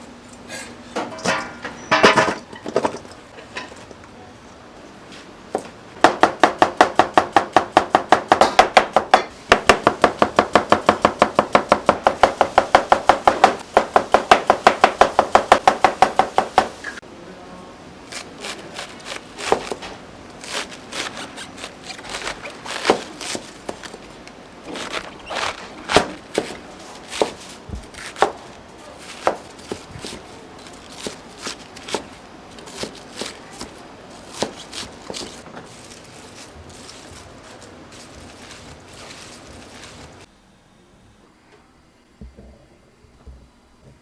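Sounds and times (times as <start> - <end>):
kitchen background noise: 0.0 - 40.3
knife chopping on cutting board: 6.1 - 16.7, 18.1 - 24.0, 24.7 - 28.4, 29.0 - 30.3, 30.9 - 35.4.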